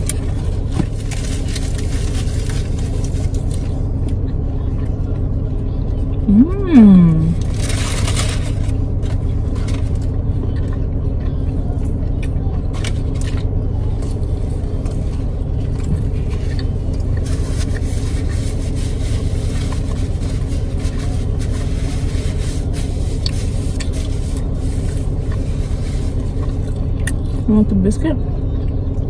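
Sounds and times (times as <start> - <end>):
food packaging crackling: 0.0 - 4.0, 7.4 - 10.7, 12.7 - 27.4
steady low rumble: 0.0 - 29.0.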